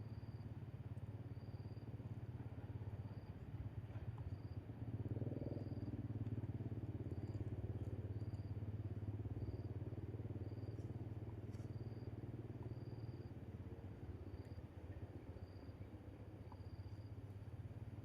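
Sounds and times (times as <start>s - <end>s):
low engine hum: 0.0s - 18.0s.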